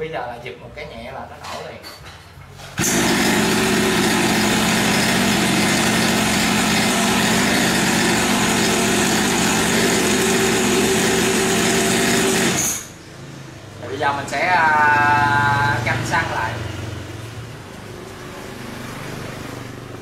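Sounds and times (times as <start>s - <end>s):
two-stroke engine idling: 2.8s - 12.6s.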